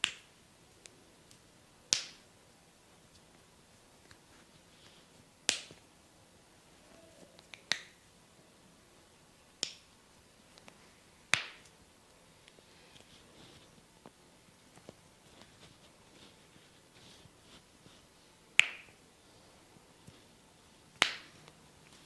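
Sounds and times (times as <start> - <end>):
hair cracking snaps: 0.0 - 2.3, 5.4 - 5.8, 7.2 - 8.0, 9.6 - 9.9, 10.5 - 11.8, 21.0 - 22.0.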